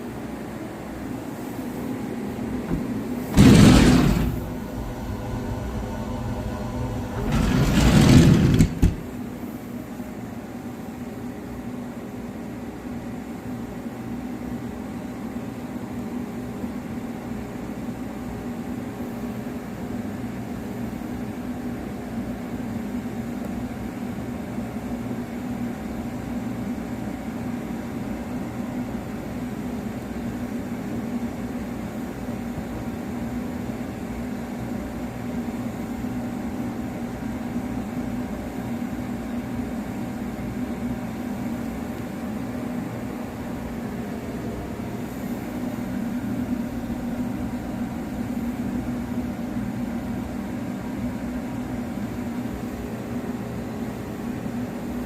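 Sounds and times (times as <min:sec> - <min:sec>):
thin steady whine: 0:01.2 - 0:09.2
grinding machine hum: 0:02.7 - 0:09.2.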